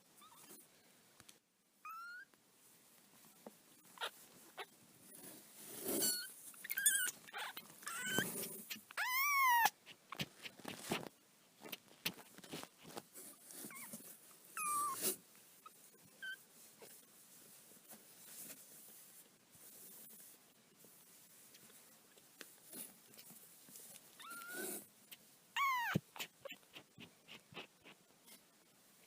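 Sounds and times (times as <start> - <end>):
soft rustling: 2.2 - 29.0
kittens mewing: 25.6 - 28.0.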